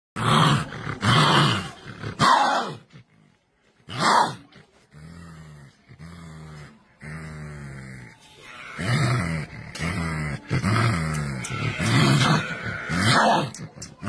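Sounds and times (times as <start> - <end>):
low pitched growl: 4.9 - 14.0
animal giving harsh calls: 8.4 - 14.0.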